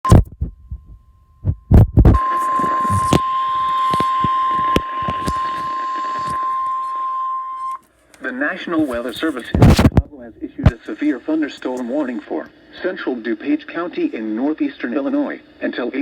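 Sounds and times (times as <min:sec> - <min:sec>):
dull low thumps: 0:00.1 - 0:02.2
steady high alert tone: 0:02.2 - 0:07.6
noisy hiss: 0:07.9 - 0:16.0.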